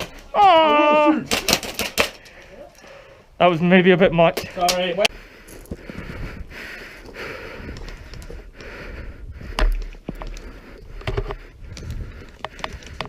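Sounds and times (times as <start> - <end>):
person breathing hard: 2.1 - 3.4, 5.1 - 13.0.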